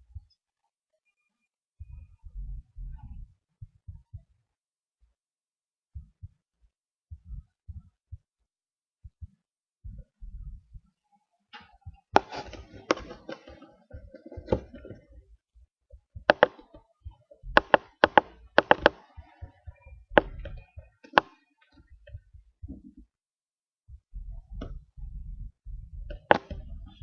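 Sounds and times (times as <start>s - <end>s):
sharp knocks and taps: 11.5s - 15.2s, 15.9s - 23.1s, 26.1s - 27.0s.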